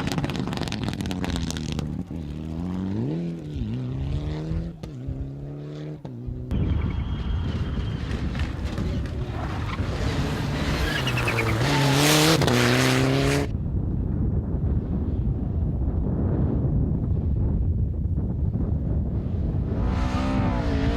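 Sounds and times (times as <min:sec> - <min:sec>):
rally car engine revving: 0:00.0 - 0:13.5, 0:19.2 - 0:20.9
wind buffeting microphone: 0:06.2 - 0:12.5, 0:13.4 - 0:20.9.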